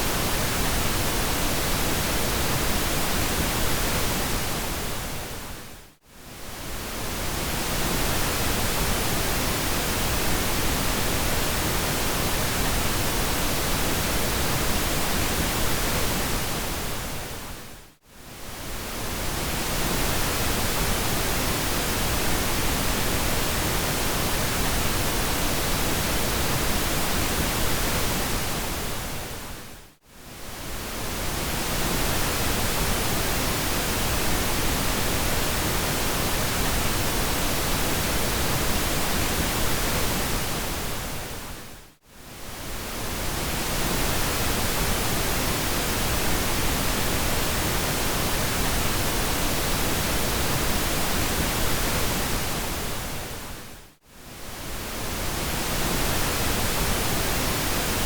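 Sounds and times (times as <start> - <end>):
pink noise hiss: 18.2 - 58.0.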